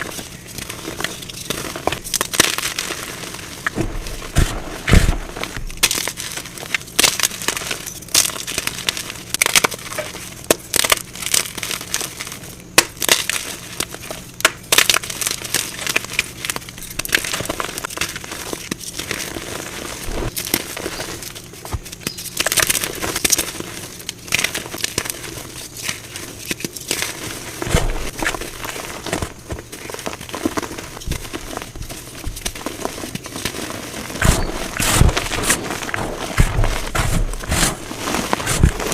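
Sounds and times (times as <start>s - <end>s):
chalk being crushed: 0.0s - 14.1s, 15.0s - 38.9s.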